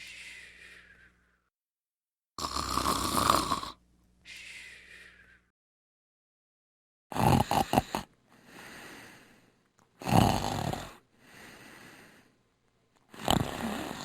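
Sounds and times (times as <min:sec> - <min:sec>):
person snoring: 0:02.4 - 0:03.8, 0:07.1 - 0:09.4, 0:10.0 - 0:12.3, 0:13.1 - 0:14.0.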